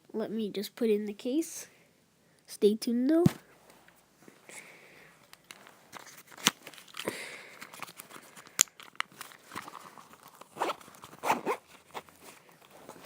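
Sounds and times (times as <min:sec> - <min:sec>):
fidget cube rustling and scraping: 0:05.9 - 0:13.0.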